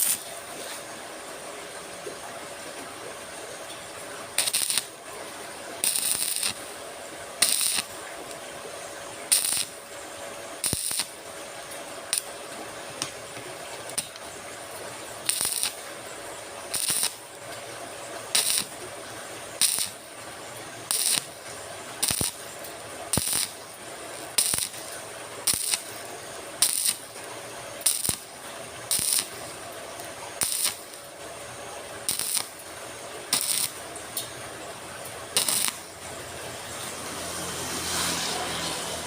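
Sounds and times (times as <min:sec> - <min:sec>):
vehicle passing by: 0:36.2 - 0:39.0.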